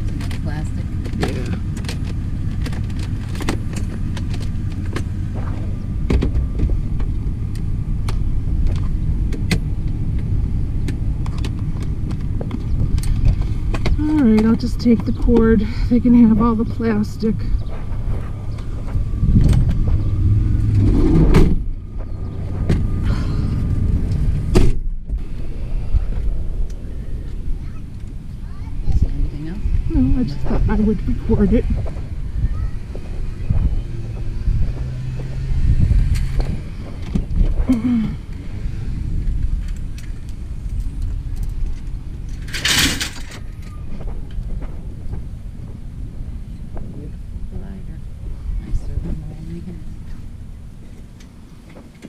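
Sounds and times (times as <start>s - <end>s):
knocks and clunks: 0.0s - 25.4s
vehicle engine running: 0.0s - 52.0s
loud rush of noise: 17.6s - 49.1s.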